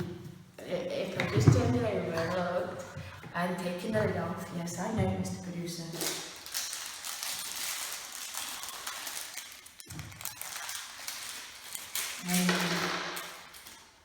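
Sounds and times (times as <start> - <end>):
plastic parts rustling: 5.9 - 14.0.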